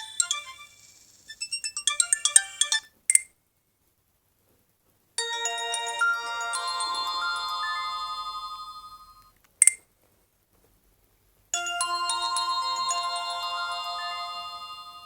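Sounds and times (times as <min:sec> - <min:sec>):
mobile phone ringtone melody: 0:00.0 - 0:02.9, 0:05.2 - 0:09.3, 0:11.6 - 0:15.0.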